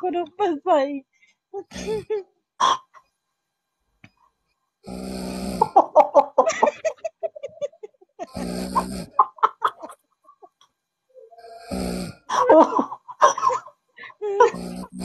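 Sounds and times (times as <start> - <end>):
person snoring: 4.8 - 6.0, 8.2 - 9.5, 11.2 - 12.7, 14.4 - 15.0.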